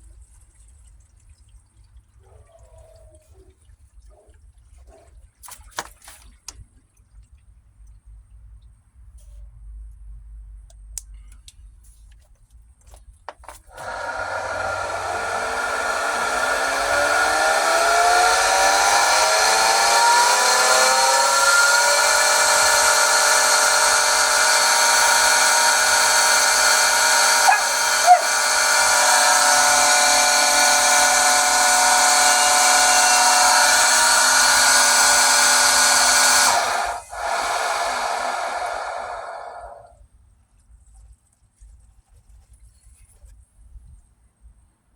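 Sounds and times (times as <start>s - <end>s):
pool pump motor whining: 13.4s - 40.0s
high screech: 16.8s - 39.7s.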